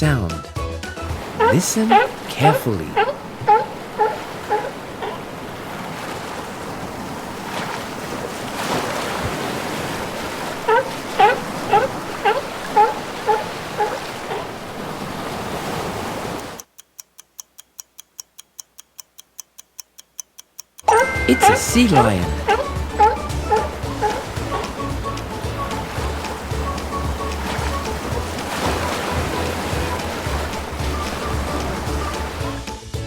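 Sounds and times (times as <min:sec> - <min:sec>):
surf: 0:00.0 - 0:16.6, 0:20.8 - 0:33.0
sea lion barking: 0:01.1 - 0:05.6, 0:09.8 - 0:14.9, 0:20.9 - 0:32.6
countdown timer ticking: 0:16.6 - 0:28.4.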